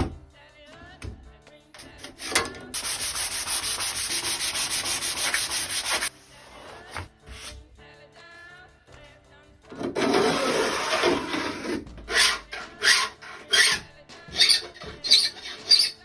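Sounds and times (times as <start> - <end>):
hand file rasping on saw teeth: 10.0 - 16.0.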